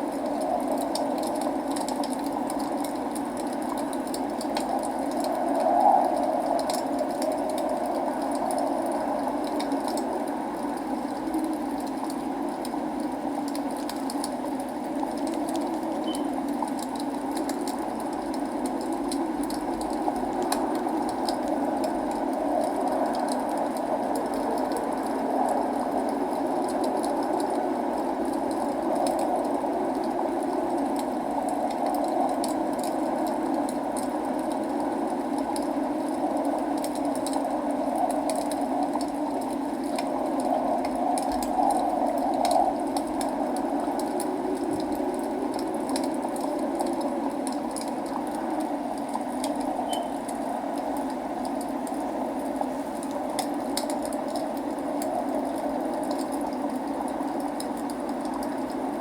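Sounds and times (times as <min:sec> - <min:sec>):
log fire crackling and popping: 0:00.0 - 0:59.0
rain rushing: 0:00.0 - 0:59.0.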